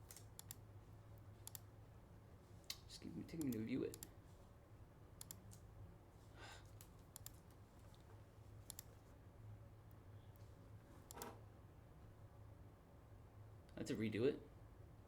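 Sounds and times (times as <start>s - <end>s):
computer mouse clicks: 0.0s - 0.6s, 1.4s - 1.7s, 2.7s - 4.1s, 5.2s - 5.6s, 6.7s - 8.0s, 8.6s - 8.9s, 11.0s - 11.4s.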